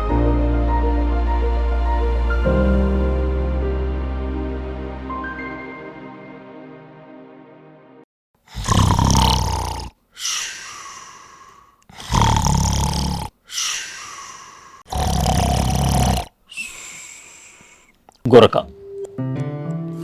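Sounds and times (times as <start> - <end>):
person snoring: 8.5 - 17.9
quiet breath: 10.1 - 12.2, 13.3 - 14.9, 16.4 - 18.1.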